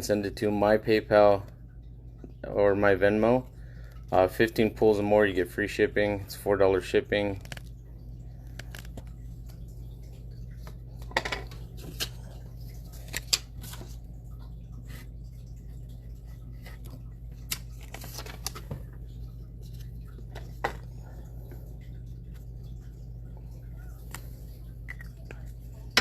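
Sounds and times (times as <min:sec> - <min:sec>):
low electrical hum: 0:00.0 - 0:26.0.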